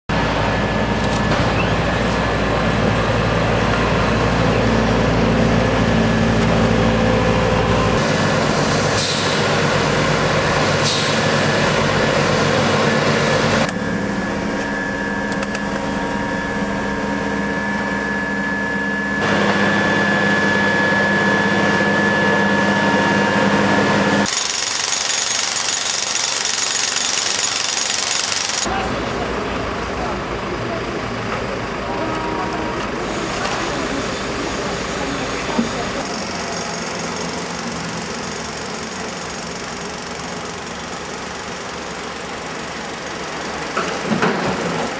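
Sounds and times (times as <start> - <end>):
heavy machinery engines rattling: 24.2 - 44.9.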